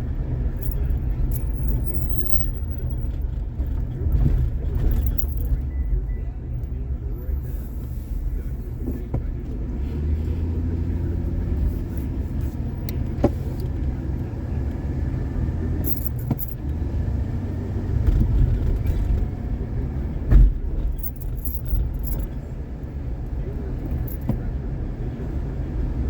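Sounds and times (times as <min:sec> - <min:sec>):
car road and engine rumble: 0:00.0 - 0:26.0
sharp clicks and rattles: 0:00.5 - 0:05.9, 0:15.8 - 0:16.7.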